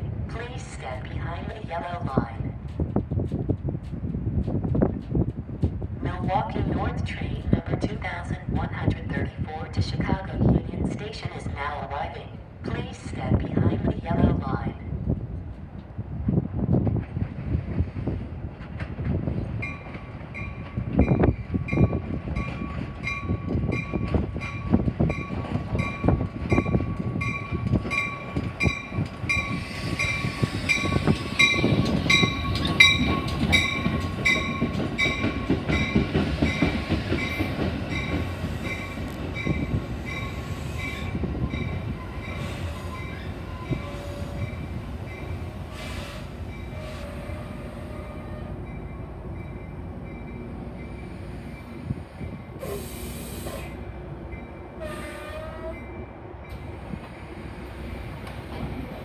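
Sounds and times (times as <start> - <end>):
train wheels clattering over rail joints: 18.5 - 48.2.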